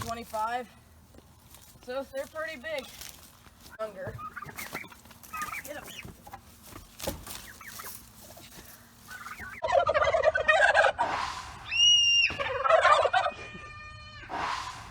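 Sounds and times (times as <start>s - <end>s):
turkeys gobbling: 3.7s - 13.4s
high-pitched turkey call: 9.1s - 13.3s.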